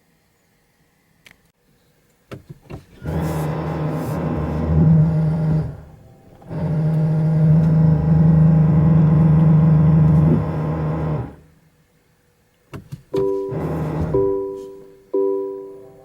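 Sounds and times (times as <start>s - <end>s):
car buzzing hum: 2.3s - 11.5s, 12.7s - 14.8s
pinging chime: 14.3s - 16.0s.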